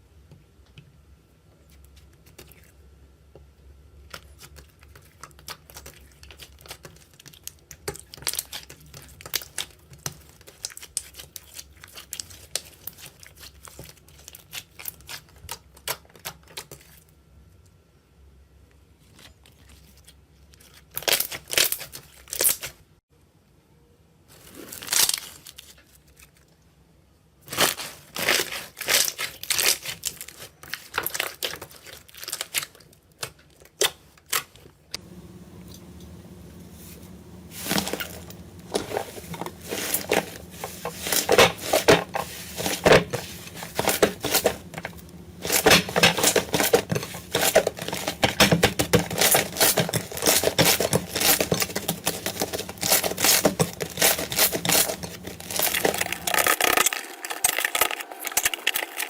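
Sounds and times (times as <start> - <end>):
faint low hum: 34.9 - 59.0
slime crackling and popping: 37.1 - 59.0.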